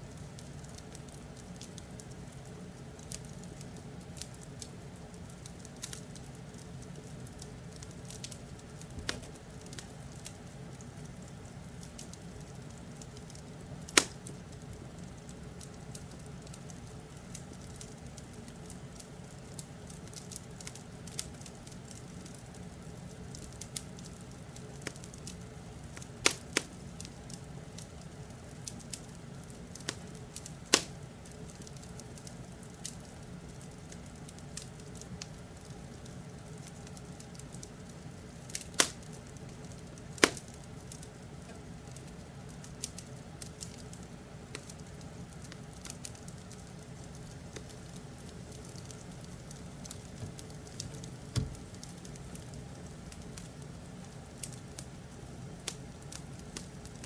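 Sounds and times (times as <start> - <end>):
wood fire crackling: 0.1 - 57.0
sharp pops from fire: 7.8 - 10.8, 13.8 - 15.8, 26.0 - 26.8, 29.7 - 32.0, 38.5 - 53.6.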